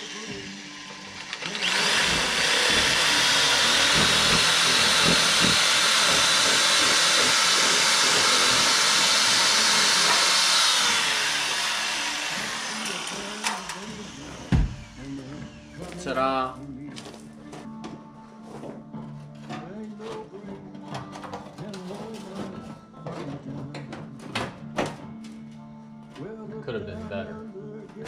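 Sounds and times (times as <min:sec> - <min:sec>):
angle grinder cutting metal: 0:00.0 - 0:16.2.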